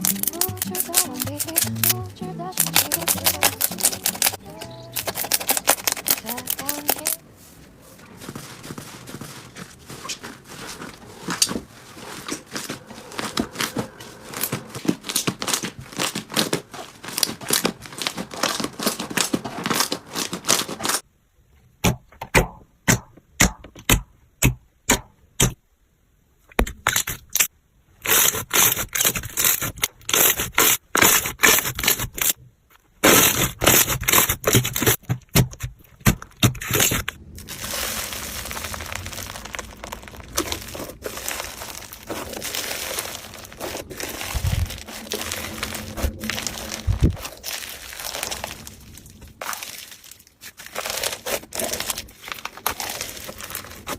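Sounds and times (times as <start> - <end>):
slime crackling and popping: 0.0 - 2.0, 2.6 - 7.2, 33.0 - 53.9.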